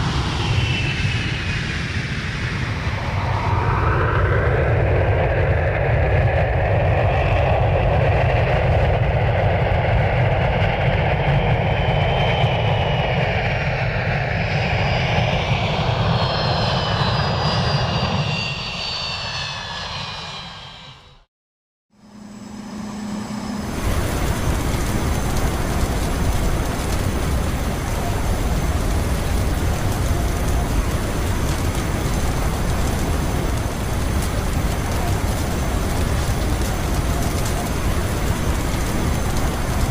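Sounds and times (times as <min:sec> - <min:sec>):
airliner engine noise: 0:00.0 - 0:21.3, 0:21.9 - 0:39.9
turbine whine sliding down: 0:12.4 - 0:21.3, 0:21.9 - 0:29.5.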